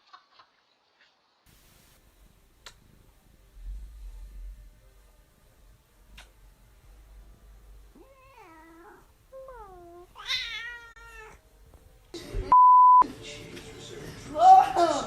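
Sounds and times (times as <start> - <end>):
cat meowing: 8.0 - 11.4
steady electronic beep: 12.5 - 13.0.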